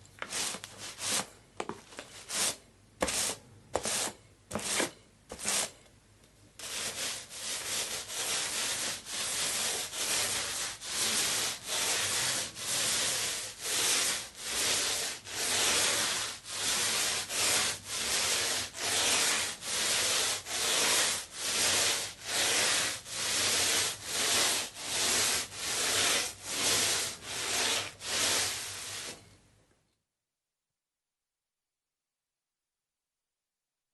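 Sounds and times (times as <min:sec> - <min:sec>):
paint roller rubbing hiss: 0:06.6 - 0:29.2.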